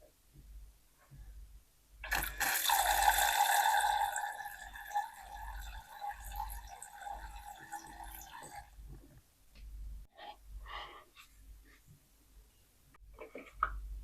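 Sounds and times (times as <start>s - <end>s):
water pouring into basin: 2.1s - 8.9s.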